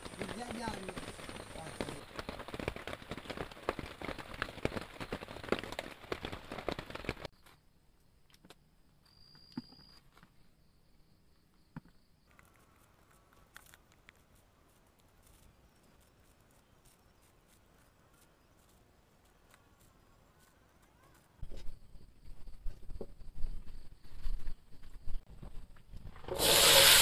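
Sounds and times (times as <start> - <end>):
rain pattering: 0.0 - 7.3.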